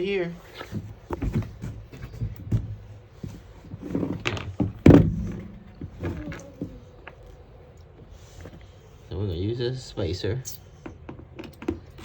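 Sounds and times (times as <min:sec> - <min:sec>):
knocks and thuds on plywood: 0:00.8 - 0:06.8.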